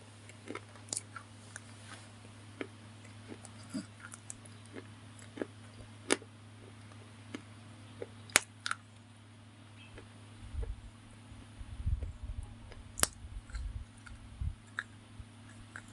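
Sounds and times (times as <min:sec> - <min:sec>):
low rumbling: 0:00.0 - 0:15.9
steady low hum: 0:00.0 - 0:15.9
crunchy chewing cracks: 0:00.2 - 0:09.1, 0:12.7 - 0:15.9.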